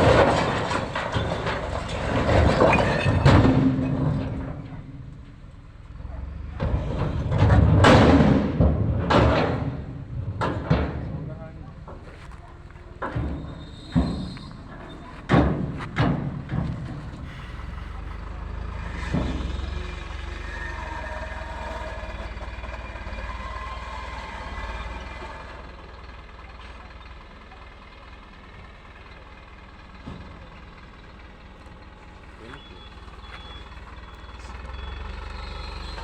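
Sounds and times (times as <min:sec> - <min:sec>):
heavy vehicle engine rumbling: 0:00.0 - 0:36.0
loud knocks: 0:06.6 - 0:12.0, 0:13.0 - 0:17.7.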